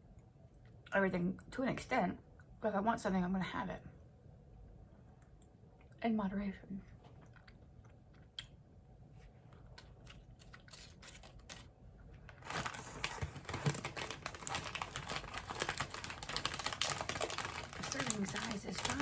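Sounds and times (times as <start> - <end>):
plastic snack bag crinkling: 9.6 - 19.0.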